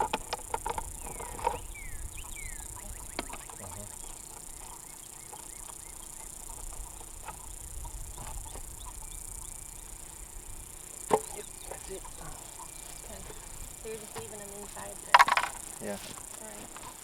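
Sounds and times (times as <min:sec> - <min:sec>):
high insect buzz: 0:00.0 - 0:17.0
bird chirps: 0:00.7 - 0:17.0.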